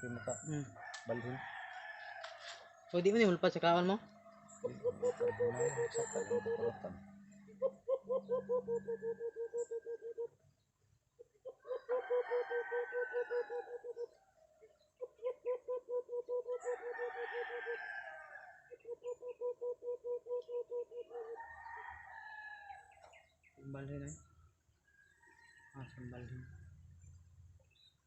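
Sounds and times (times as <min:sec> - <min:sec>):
rooster crowing: 0:00.0 - 0:02.8, 0:04.3 - 0:07.1, 0:11.6 - 0:13.9, 0:16.5 - 0:18.7, 0:21.1 - 0:23.0
chickens calling: 0:00.0 - 0:10.4.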